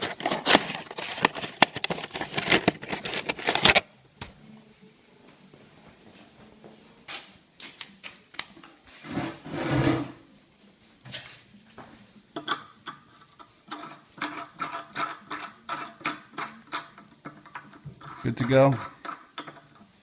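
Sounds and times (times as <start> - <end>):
handling noise: 0.0 - 4.4.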